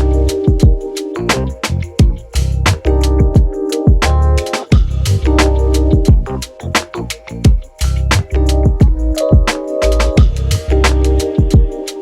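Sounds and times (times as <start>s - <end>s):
electronic hip-hop music: 0.0s - 12.0s.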